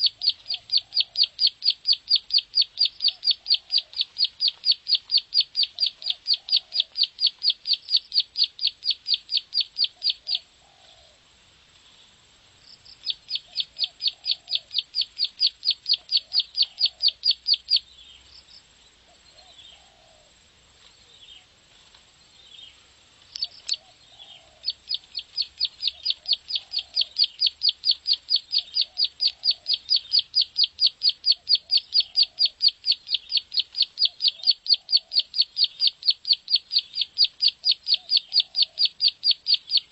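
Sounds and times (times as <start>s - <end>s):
bird clicking trill: 0.0s - 10.4s, 12.9s - 17.8s, 23.2s - 23.8s, 24.6s - 39.9s
soft bird chirps: 0.0s - 11.2s, 11.8s - 20.2s, 20.8s - 39.9s.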